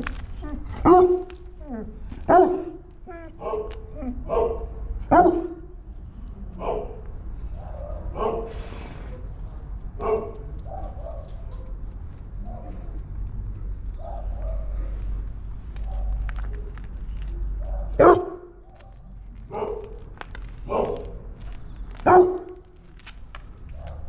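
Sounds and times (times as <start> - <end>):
puppy barking: 0.4 - 5.7, 6.5 - 8.6, 10.0 - 11.8, 12.4 - 12.9, 13.9 - 15.2, 15.8 - 16.6, 17.6 - 21.2, 22.0 - 22.6.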